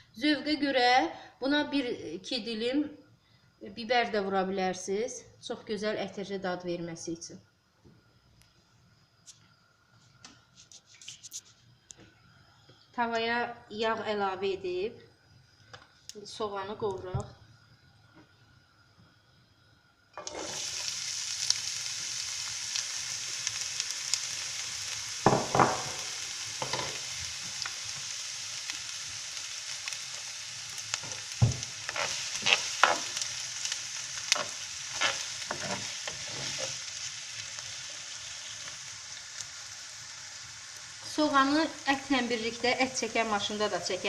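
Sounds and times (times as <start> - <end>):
stirring clicks and scrapes on pan: 10.2 - 11.6, 30.9 - 36.9
onion sizzling in hot oil: 18.6 - 44.0.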